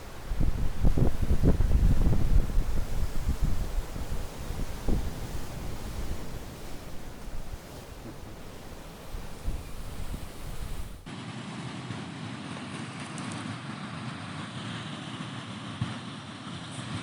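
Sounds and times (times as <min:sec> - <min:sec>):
ocean surf washing in: 0:00.0 - 0:11.1
wind buffeting microphone: 0:00.0 - 0:11.1.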